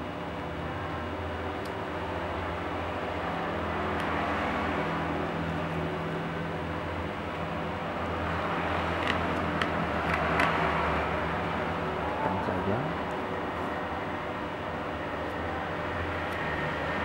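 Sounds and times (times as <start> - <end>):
laptop parts clicking: 9.0 - 10.6.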